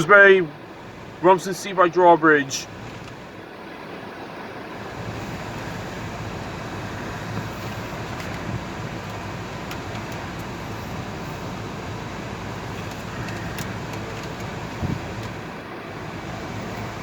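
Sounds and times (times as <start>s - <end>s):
road and tyre noise in car: 0.0s - 17.0s.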